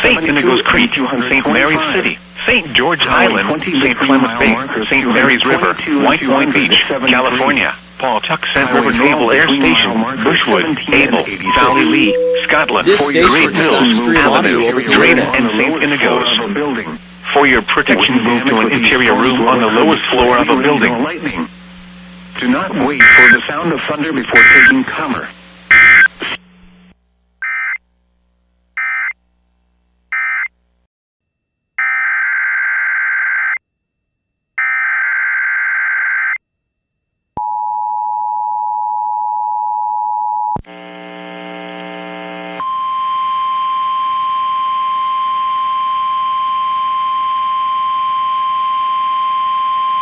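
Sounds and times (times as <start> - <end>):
two-pitch attention tone: 11.5 - 13.9
steady single-pitch alert tone: 11.5 - 15.4
screeching data bursts: 23.0 - 23.4, 24.4 - 24.8, 25.7 - 26.2.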